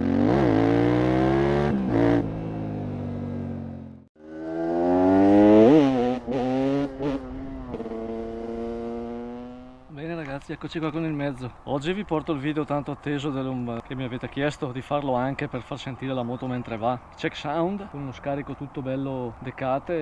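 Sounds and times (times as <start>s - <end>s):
motorcycle engine revving: 0.0s - 9.9s.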